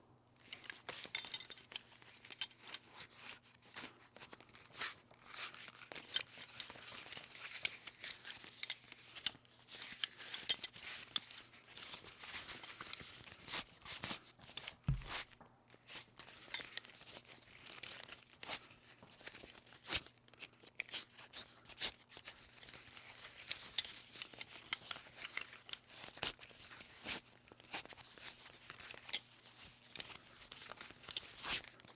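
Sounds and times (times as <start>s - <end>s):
metal buckle clicking and clinking: 0.5s - 2.9s, 6.1s - 7.3s, 8.5s - 9.3s, 10.0s - 13.1s, 14.6s - 15.2s, 16.6s - 16.9s.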